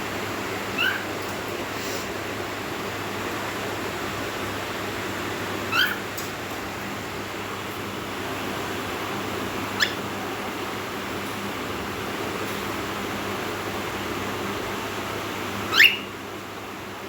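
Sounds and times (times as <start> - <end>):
cockatiel chirping: 0.8 - 1.1, 5.7 - 6.0, 9.8 - 10.0, 15.7 - 16.1.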